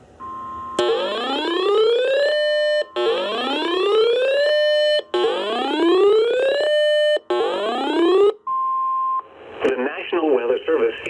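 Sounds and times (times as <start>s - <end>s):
electronic whooping alarm: 0.2s - 9.0s.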